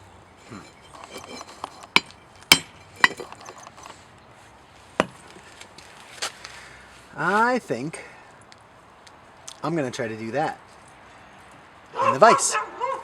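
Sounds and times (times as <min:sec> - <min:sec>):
hammer striking steel: 0:00.4 - 0:03.9.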